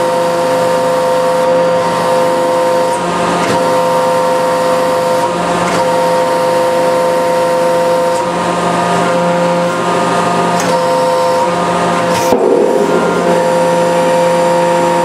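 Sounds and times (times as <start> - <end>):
sharp crack: 12.3 - 14.3.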